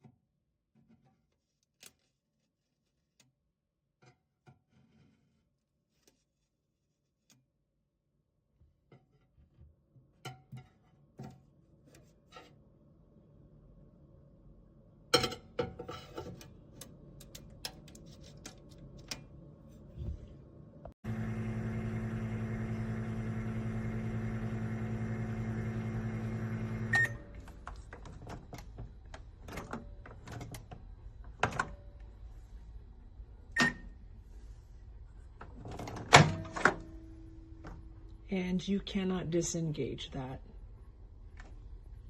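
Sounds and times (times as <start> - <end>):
microwave oven humming: 20.3 - 29.1.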